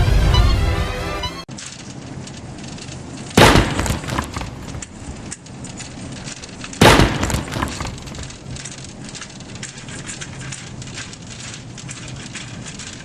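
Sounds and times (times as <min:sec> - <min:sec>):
sudden loud crashes: 0:00.0 - 0:01.5
steady crackling noise: 0:00.0 - 0:13.0.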